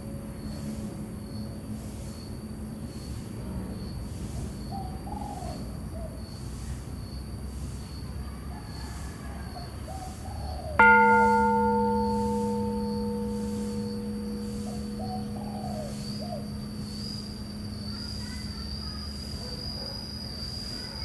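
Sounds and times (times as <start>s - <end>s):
temple bell ringing: 10.8s - 19.2s.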